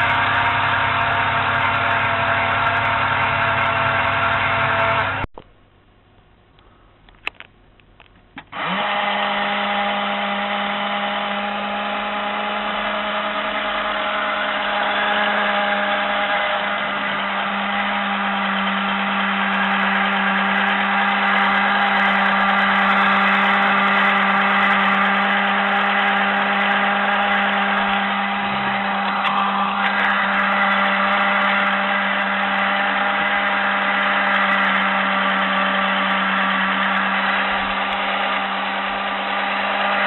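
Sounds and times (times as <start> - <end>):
small electric motor whirring: 8.4 - 40.0.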